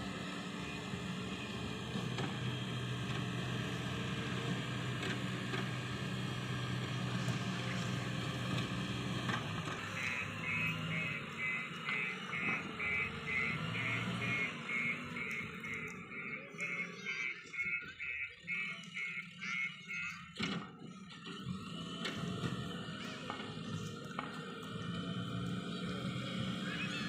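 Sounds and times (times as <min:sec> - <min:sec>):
diesel engine running: 0:00.0 - 0:27.0
high repeating beep: 0:10.0 - 0:20.2.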